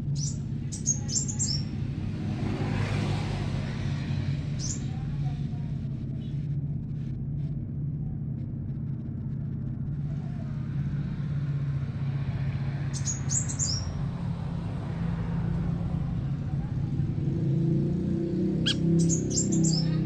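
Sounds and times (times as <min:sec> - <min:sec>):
songbird chirps: 0:00.0 - 0:01.9, 0:04.5 - 0:05.0, 0:12.6 - 0:14.1, 0:18.1 - 0:20.0
steady low hum: 0:04.4 - 0:20.0.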